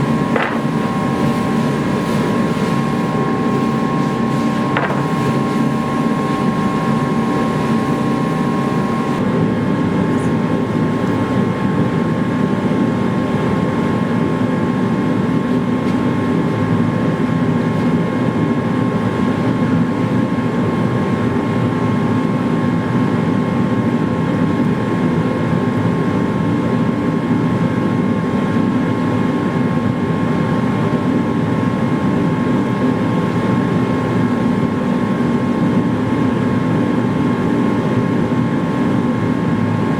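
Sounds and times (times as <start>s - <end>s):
forge rushing noise: 0.0s - 9.2s.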